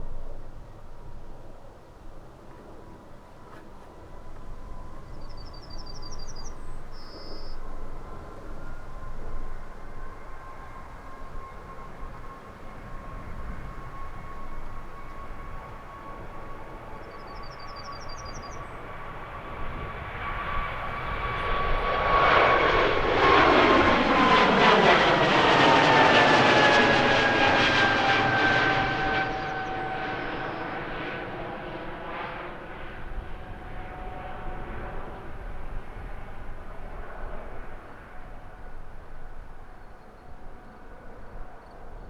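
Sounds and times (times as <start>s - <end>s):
jet engines taking off: 3.6s - 42.0s.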